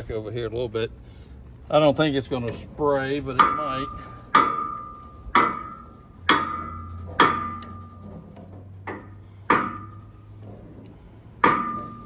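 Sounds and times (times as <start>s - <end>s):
hammer ringing on metal: 3.3s - 8.1s, 8.9s - 10.1s, 11.4s - 12.0s.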